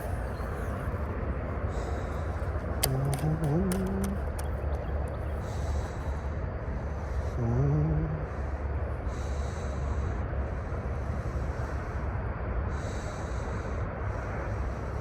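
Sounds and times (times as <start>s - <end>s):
low outdoor rumble: 0.0s - 15.0s
man humming: 2.8s - 4.4s, 7.3s - 8.4s.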